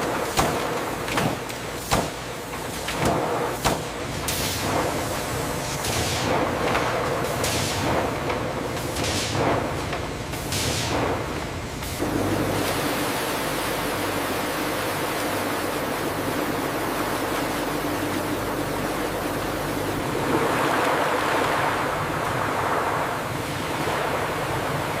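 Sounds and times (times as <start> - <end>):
steady rushing noise: 10.7 - 25.0.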